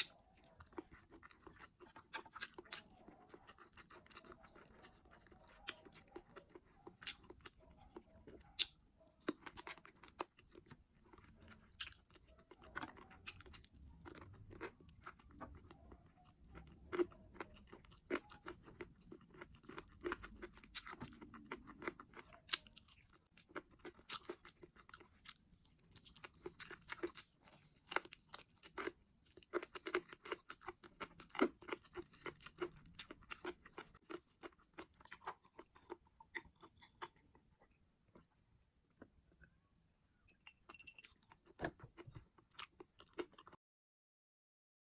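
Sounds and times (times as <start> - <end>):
person chewing crunchy food: 0.0 - 39.5, 40.4 - 43.6.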